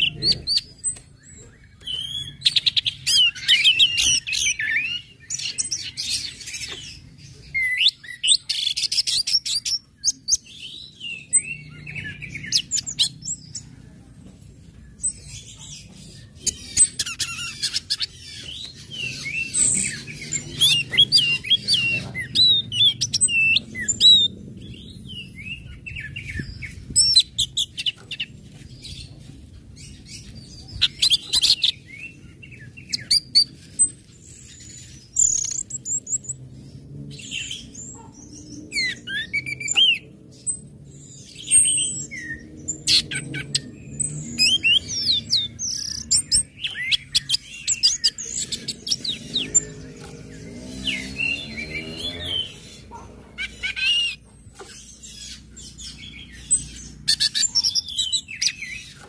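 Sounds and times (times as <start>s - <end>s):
bird singing chirps and whistles: 0.0s - 6.8s, 16.4s - 28.3s, 30.2s - 36.4s, 37.2s - 54.2s.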